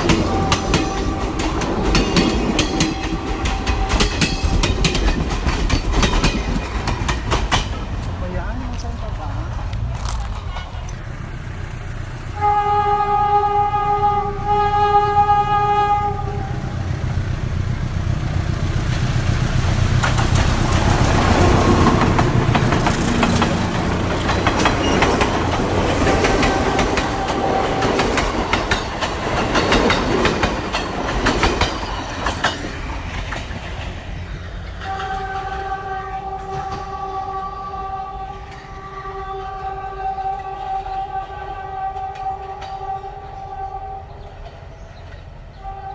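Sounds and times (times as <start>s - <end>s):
train horn: 0.0s - 4.7s, 12.3s - 16.9s, 21.0s - 28.7s, 34.8s - 44.5s, 45.5s - 45.9s
wheels clacking over rail joints: 0.0s - 12.3s, 16.8s - 37.3s
passing train rumble: 0.0s - 45.9s.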